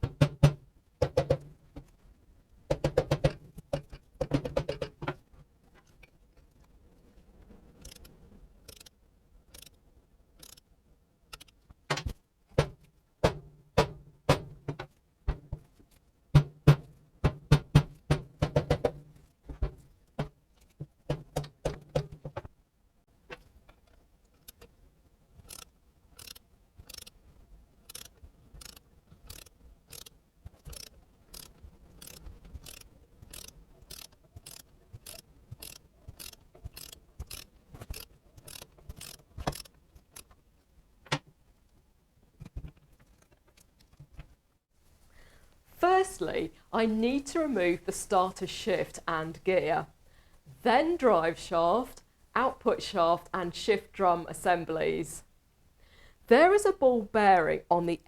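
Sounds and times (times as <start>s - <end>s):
hand tools clicking on metal: 25.4s - 27.1s, 27.9s - 40.3s.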